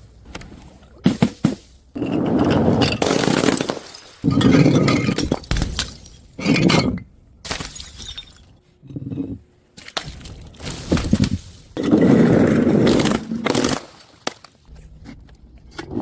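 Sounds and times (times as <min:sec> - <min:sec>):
glass shattering: 0:02.8 - 0:08.5.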